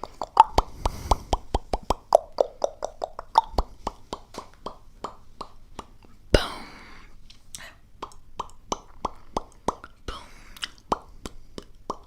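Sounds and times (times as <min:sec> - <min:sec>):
tongue clicks and lip pops: 0:00.0 - 0:06.2, 0:07.6 - 0:12.0
soft breathy puffs: 0:00.6 - 0:01.7.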